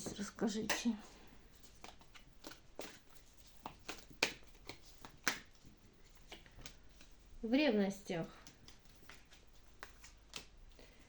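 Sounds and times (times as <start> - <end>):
cards being shuffled: 1.5 - 7.2, 8.4 - 10.8.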